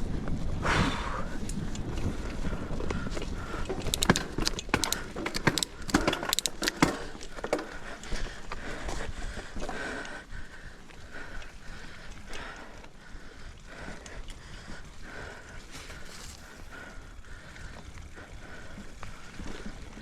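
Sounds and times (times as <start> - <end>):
tyre and wind noise: 0.0 - 8.4
bike chain and frame clattering: 3.4 - 8.1.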